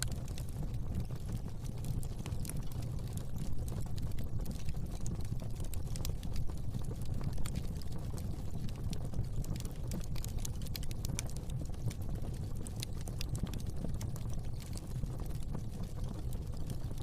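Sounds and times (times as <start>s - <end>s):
low rumble of flames: 0.0s - 17.0s
wood fire crackling and popping: 0.0s - 17.0s.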